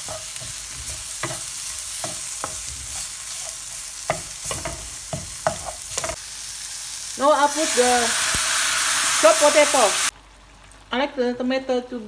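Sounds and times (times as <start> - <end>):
utensil knocking and scraping pan: 0.0 - 6.2
vegetables sizzling in a pan: 0.0 - 10.2.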